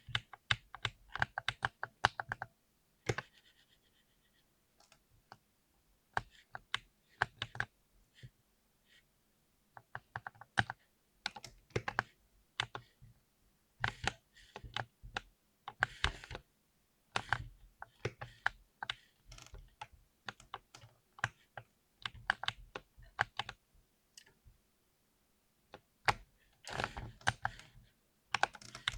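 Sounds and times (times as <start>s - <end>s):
mechanical keyboard typing: 22.0s - 23.6s, 26.1s - 27.7s, 28.3s - 28.9s.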